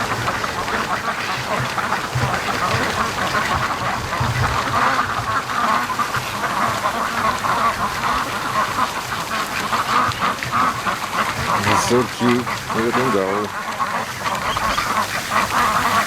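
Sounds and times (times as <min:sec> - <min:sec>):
wind rumbling on microphone: 0:00.0 - 0:12.7
ducks quacking: 0:00.0 - 0:16.0.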